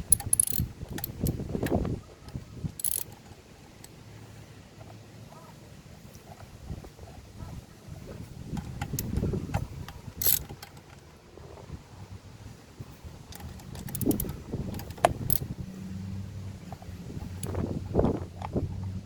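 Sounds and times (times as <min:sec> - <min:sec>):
metal tools clinking: 0:00.0 - 0:01.7, 0:02.8 - 0:03.9, 0:10.2 - 0:11.0, 0:13.3 - 0:15.5
ratchet clicking: 0:00.0 - 0:01.8, 0:02.7 - 0:03.9, 0:10.2 - 0:11.0, 0:13.3 - 0:15.5
wind rumble on microphone: 0:00.0 - 0:03.2, 0:06.0 - 0:19.0.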